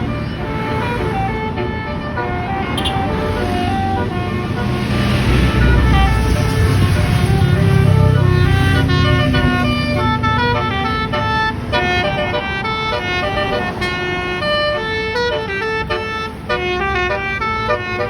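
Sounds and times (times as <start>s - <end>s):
musical bus horn melody: 0.0s - 18.0s.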